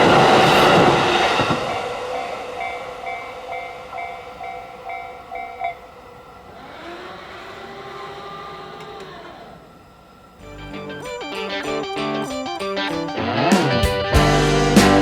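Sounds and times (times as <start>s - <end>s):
steady whine: 0.0s - 6.6s, 7.6s - 13.4s
level crossing warning bell: 2.2s - 6.5s.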